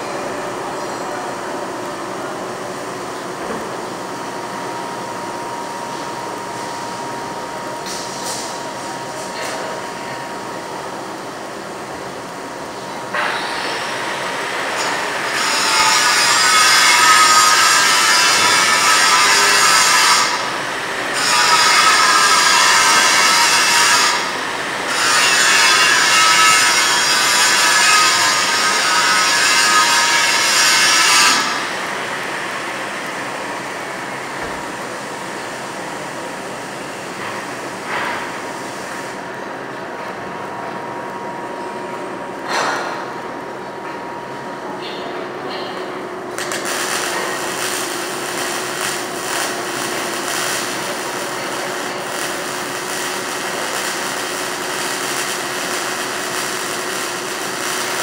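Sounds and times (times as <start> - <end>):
welding arc crackling hiss: 1.7 - 39.9, 45.8 - 58.0.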